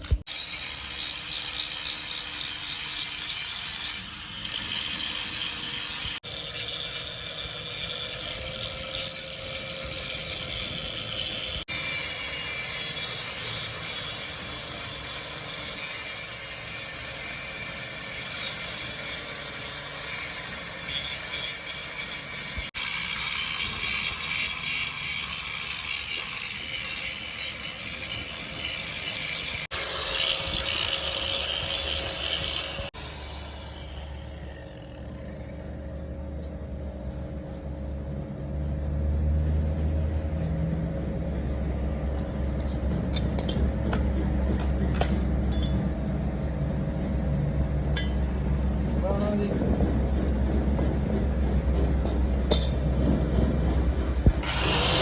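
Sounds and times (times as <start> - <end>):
machine tool running: 0.0 - 36.1, 54.0 - 55.0.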